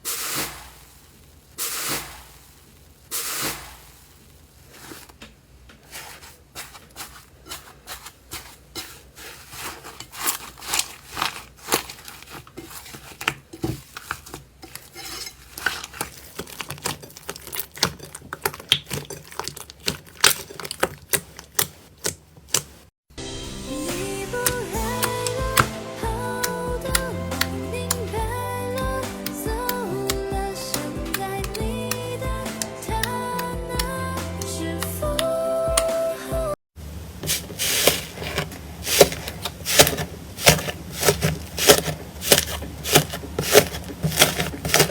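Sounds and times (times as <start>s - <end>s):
slime squelching: 5.8s - 22.9s, 24.1s - 35.9s, 37.1s - 44.9s
slime clicking and popping: 16.4s - 22.8s, 29.6s - 34.0s.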